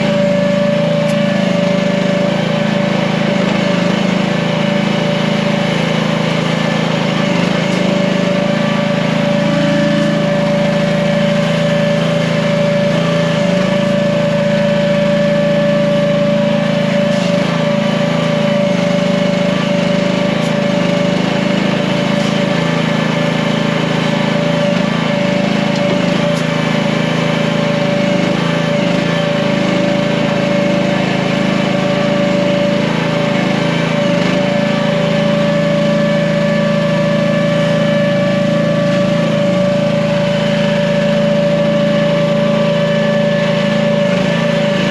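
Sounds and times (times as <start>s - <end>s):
steady whine: 0.0s - 30.7s
small gasoline engine running: 0.0s - 44.9s.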